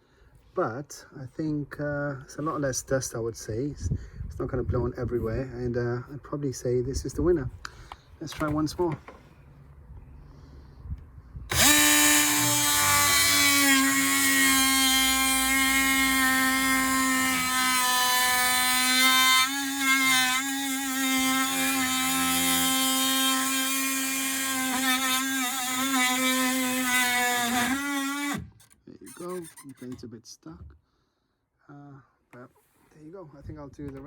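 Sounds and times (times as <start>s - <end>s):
oscillating multi-tool cutting wood: 11.5s - 30.0s.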